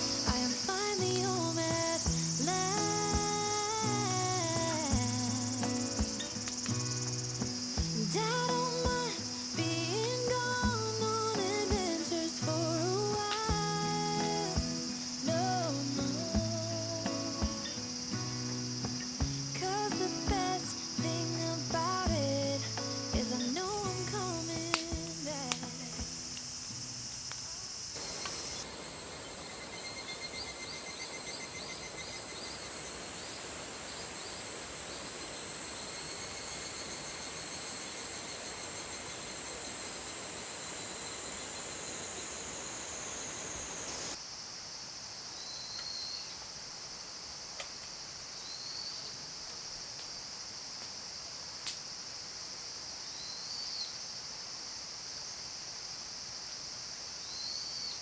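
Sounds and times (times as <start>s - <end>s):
faint chirps: 0.0s - 44.2s
broad steady hiss: 0.0s - 58.0s
insects trilling: 0.0s - 58.0s
sharp clicks: 27.3s - 33.0s.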